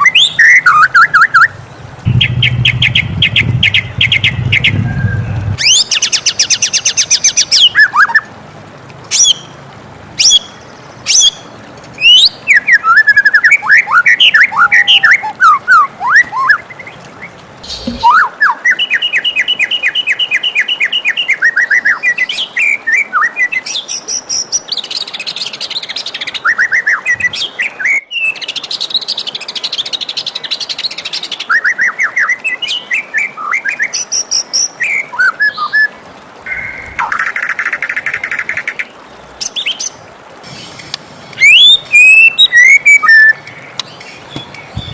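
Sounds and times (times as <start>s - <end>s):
bird singing varied song: 0.0s - 8.3s, 10.2s - 44.9s.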